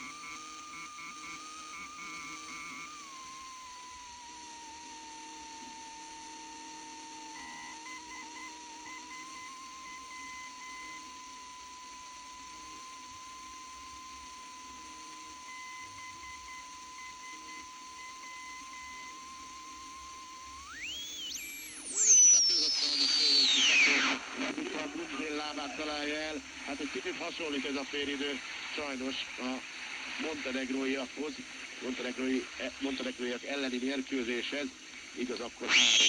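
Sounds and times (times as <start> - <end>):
radio static hiss: 0.0 - 36.0
radio heterodyne whistle: 15.4 - 26.5, 35.4 - 36.0.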